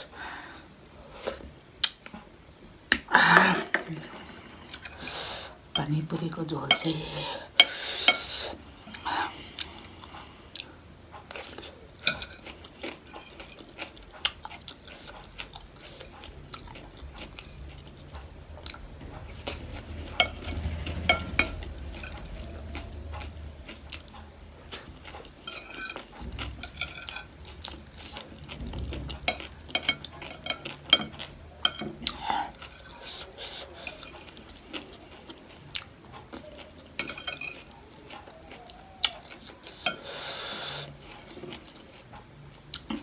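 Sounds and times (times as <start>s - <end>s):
person chewing food: 7.6s - 43.0s
spoon clinking against a bowl: 29.3s - 32.0s, 37.0s - 37.7s.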